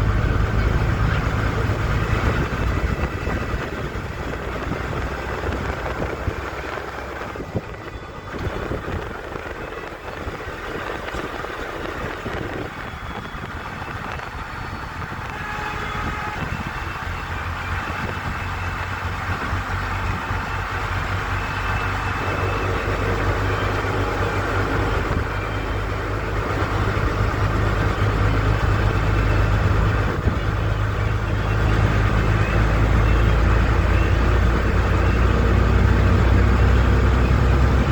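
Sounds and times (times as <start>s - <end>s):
vehicle engine rumbling: 0.0s - 37.9s.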